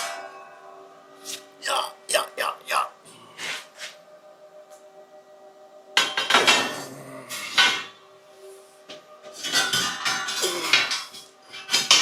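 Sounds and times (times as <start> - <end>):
metal clanking and scraping: 6.0 - 8.0, 8.9 - 12.0.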